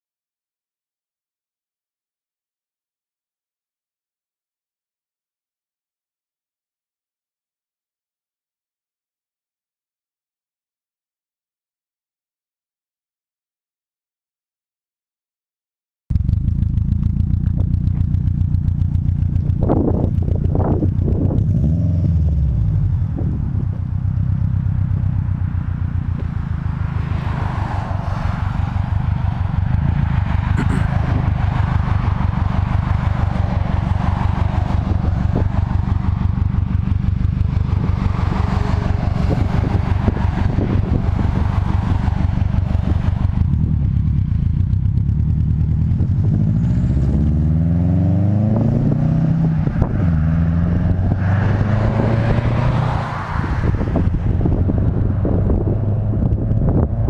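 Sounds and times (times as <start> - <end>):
car exhaust note revving: 16.1 - 57.0.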